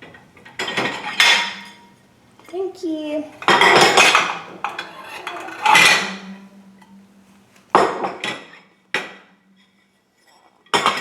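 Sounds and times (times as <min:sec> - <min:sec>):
dishes and cutlery clinking: 0:00.1 - 0:02.0, 0:03.4 - 0:06.5, 0:07.8 - 0:11.0.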